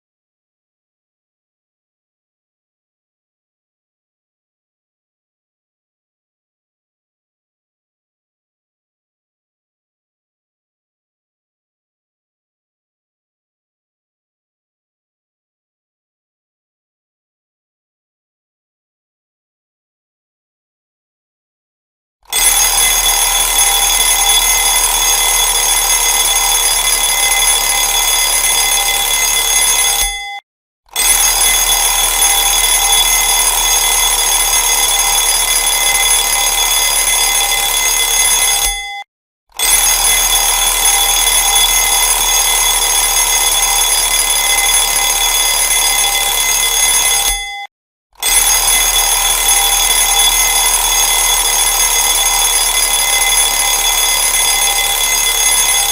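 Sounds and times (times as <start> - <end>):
alarm clock ringing: 22.3 - 39.0, 39.6 - 55.9.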